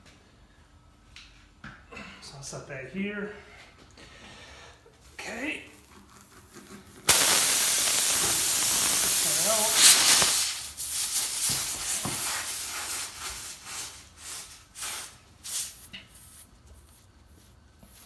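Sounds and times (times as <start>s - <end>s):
air hissing out of tire: 7.1s - 18.0s.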